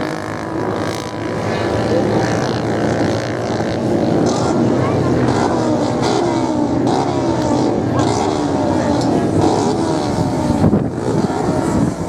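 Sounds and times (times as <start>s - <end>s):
racing motorcycle engines: 0.0s - 12.0s.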